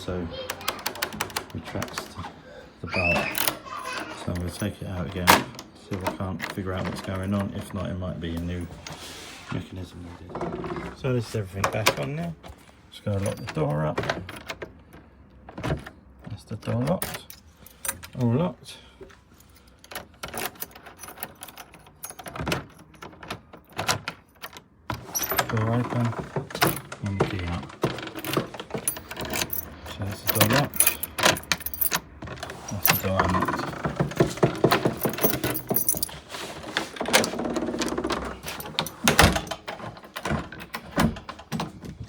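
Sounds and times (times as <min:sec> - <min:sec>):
keys rattling: 0:00.4 - 0:02.3, 0:03.0 - 0:09.0, 0:13.1 - 0:15.1, 0:16.9 - 0:18.2, 0:19.3 - 0:42.0
door lock clicking: 0:00.5 - 0:02.2, 0:03.0 - 0:04.5, 0:27.8 - 0:36.2, 0:37.0 - 0:41.8.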